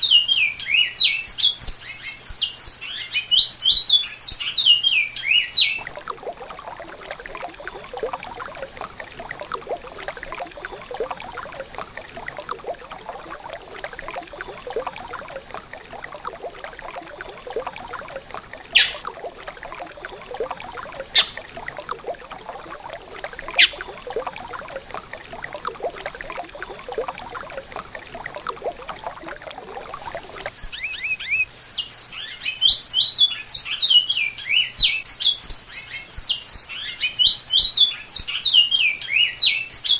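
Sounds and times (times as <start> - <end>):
finch singing whistled phrases: 0.0 - 5.9, 18.8 - 19.0, 21.2 - 21.4, 23.6 - 23.8, 30.0 - 39.9.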